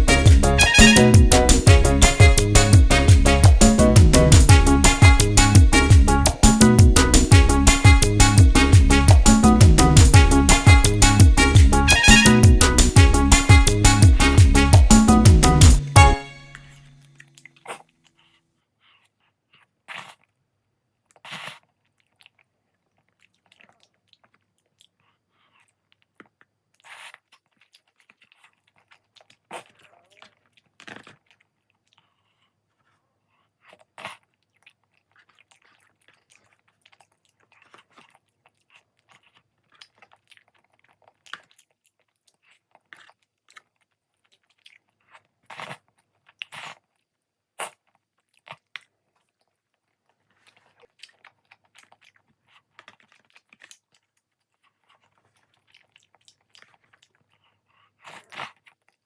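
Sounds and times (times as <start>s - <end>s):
crunches and mouth clicks: 21.0s - 59.0s
person chewing food: 21.0s - 59.0s.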